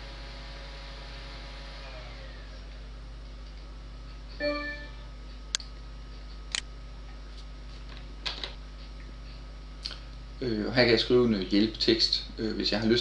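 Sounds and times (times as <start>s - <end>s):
low electrical hum: 0.0s - 13.0s
short pitched tone: 4.4s - 5.1s.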